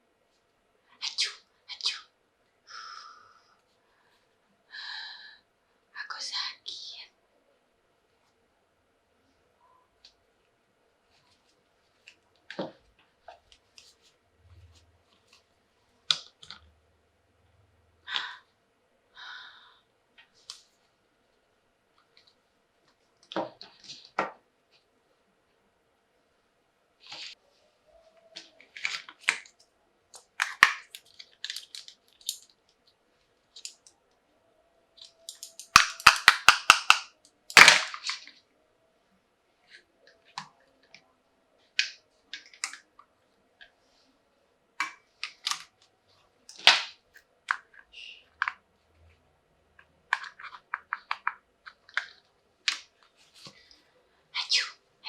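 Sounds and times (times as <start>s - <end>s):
toy pieces tapping and clicking: 30.2s - 32.5s, 35.0s - 38.2s
packaging crinkling: 30.4s - 32.5s.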